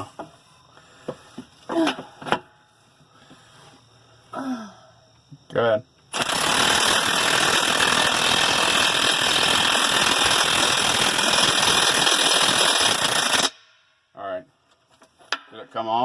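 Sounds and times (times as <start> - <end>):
impact wrench hammering: 6.2 - 13.7.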